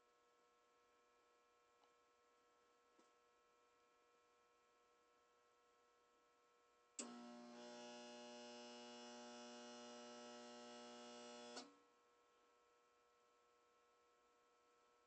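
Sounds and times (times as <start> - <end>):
loud electrical hum: 7.0 - 11.6.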